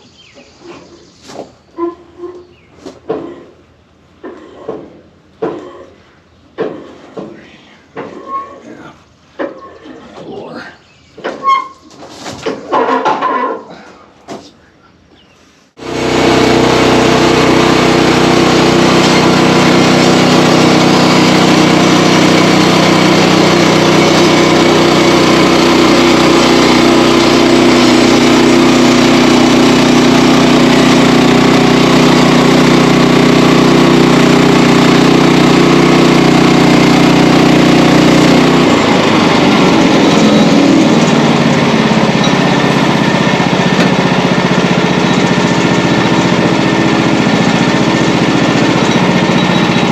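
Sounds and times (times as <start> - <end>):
small engine running: 15.8 - 49.9.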